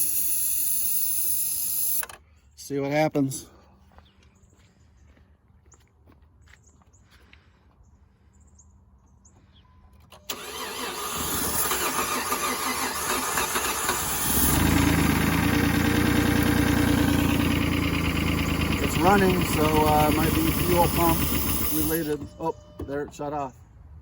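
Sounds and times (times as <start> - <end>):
starter cranking engine: 10.2 - 22.3
car engine running: 12.3 - 22.2.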